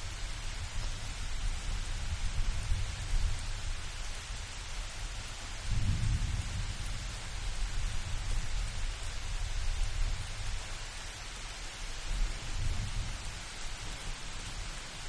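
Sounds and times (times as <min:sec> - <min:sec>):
light rain hiss: 0:00.0 - 0:15.0
thunder rumble: 0:05.7 - 0:08.0.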